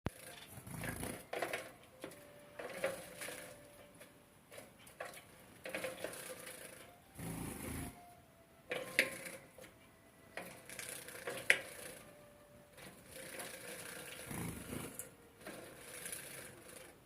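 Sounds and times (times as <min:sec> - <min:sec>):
birds splashing and fluttering wings: 0:00.1 - 0:03.8, 0:05.0 - 0:07.9, 0:10.4 - 0:12.1, 0:12.8 - 0:16.9.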